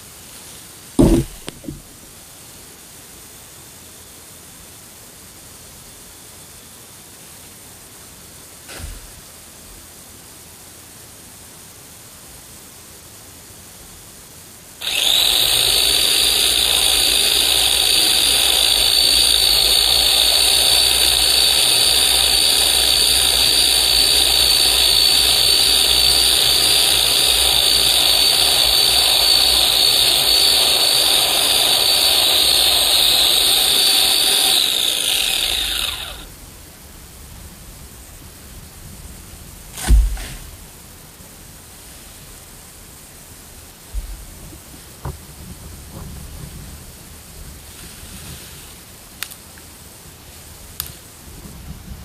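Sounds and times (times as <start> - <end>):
electric chainsaw cutting wood: 1.0 - 1.9, 14.8 - 36.4.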